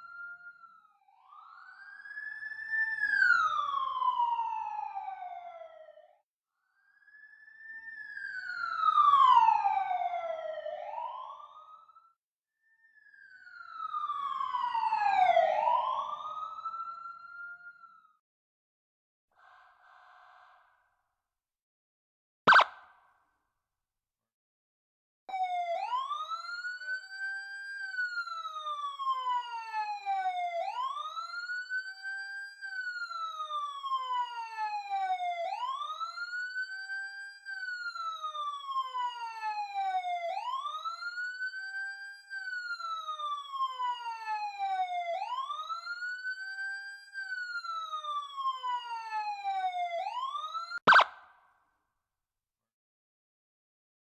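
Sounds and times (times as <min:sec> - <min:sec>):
ambulance siren wailing: 0:00.0 - 0:06.0, 0:07.6 - 0:11.9, 0:13.5 - 0:18.0, 0:22.5 - 0:22.7, 0:25.3 - 0:51.2
sharp click: 0:22.5 - 0:22.8.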